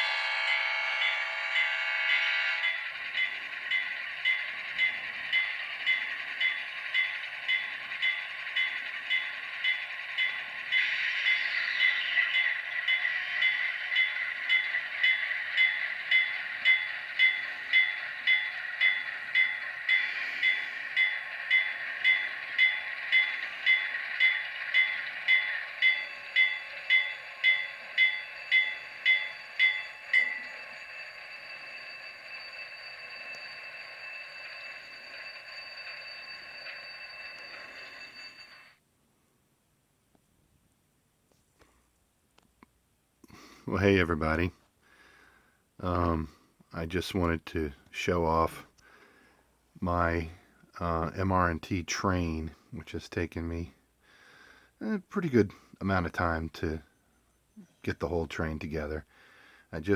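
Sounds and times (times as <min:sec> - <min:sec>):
model locomotive horn: 0:00.0 - 0:02.6
locomotive bell ringing: 0:00.0 - 0:38.8, 0:54.8 - 0:59.9.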